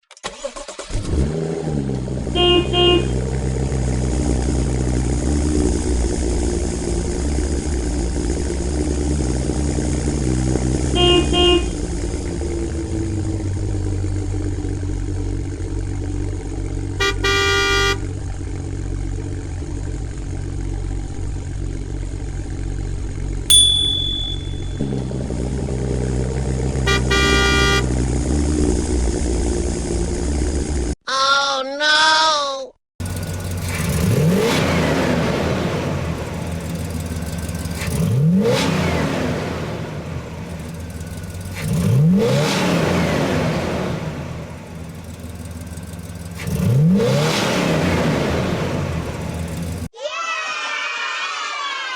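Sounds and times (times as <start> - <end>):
vehicle engine running: 1.6 - 31.0, 33.0 - 49.9
horn honks: 2.3 - 3.3, 10.8 - 11.9, 17.0 - 18.1, 26.7 - 28.1
sharp ringing ping: 23.5 - 24.9.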